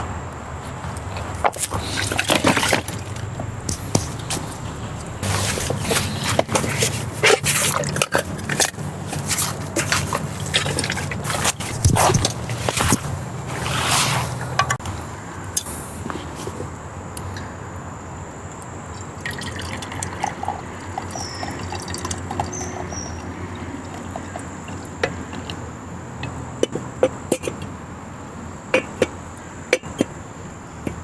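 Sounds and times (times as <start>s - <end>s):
water dripping and trickling: 0.9s - 13.4s, 18.9s - 26.7s.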